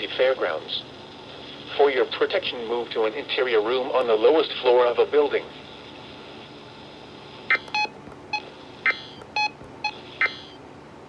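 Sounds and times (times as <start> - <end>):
short electronic beeps: 7.5 - 10.6.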